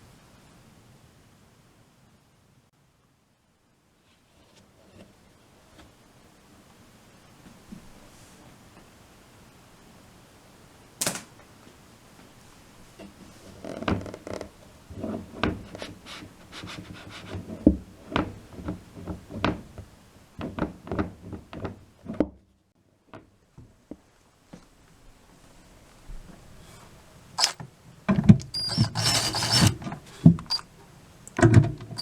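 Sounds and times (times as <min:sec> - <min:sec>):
sharp click: 0:11.0 - 0:11.3, 0:27.4 - 0:27.6
knocks clunks and rubbing: 0:13.5 - 0:22.3, 0:26.8 - 0:32.0.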